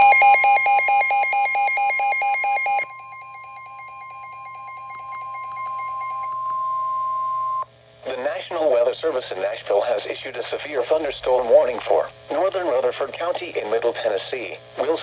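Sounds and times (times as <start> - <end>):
beeping alarm: 0.0 - 7.6
steady high alarm tone: 0.0 - 7.6.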